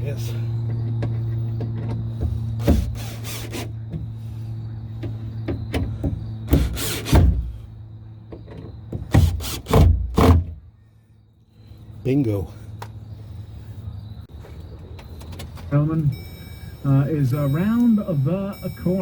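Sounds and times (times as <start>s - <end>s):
knocks and rattles: 4.9s - 7.5s.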